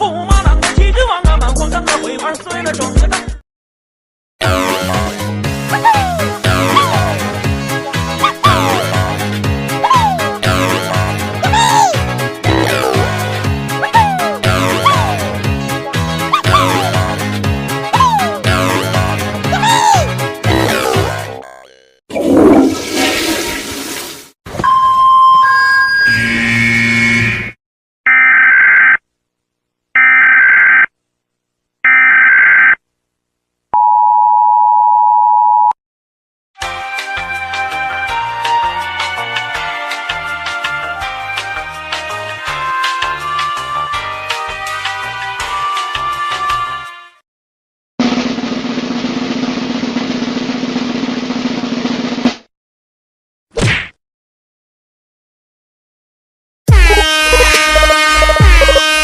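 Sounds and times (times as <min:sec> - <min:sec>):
music: 0:00.0 - 0:03.4, 0:04.4 - 0:21.4, 0:36.6 - 0:47.2, 0:56.7 - 0:59.0
snare drum roll: 0:48.0 - 0:52.5
buzzy electronic beeps: 0:56.8 - 0:59.0.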